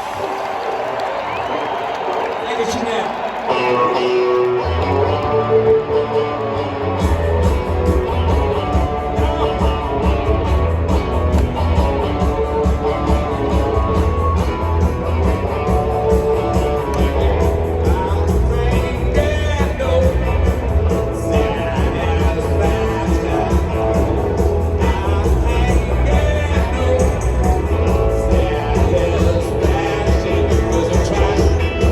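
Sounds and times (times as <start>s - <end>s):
electric guitar: 3.2s - 31.9s
bass guitar: 3.5s - 31.9s
drums at a steady beat: 7.0s - 31.9s
person singing: 16.0s - 31.9s.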